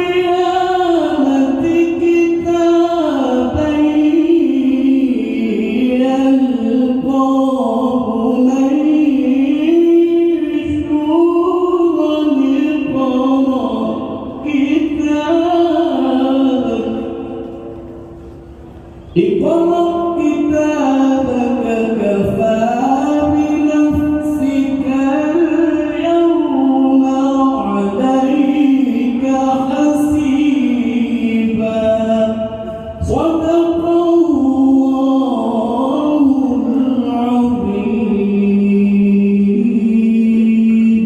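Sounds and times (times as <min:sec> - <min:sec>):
man chanting recitation: 0:00.0 - 0:17.7, 0:19.1 - 0:41.0.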